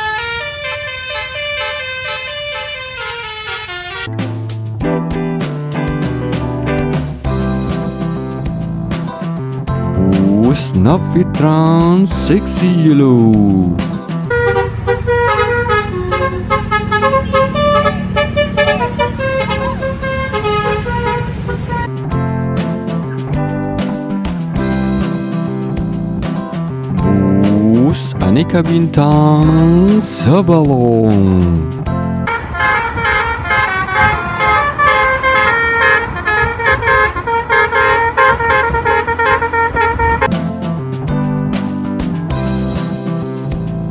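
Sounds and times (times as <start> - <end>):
bus horn playing a tune: 0.0 - 4.2, 14.3 - 21.9, 32.3 - 40.3
steady low rumble: 26.9 - 28.4.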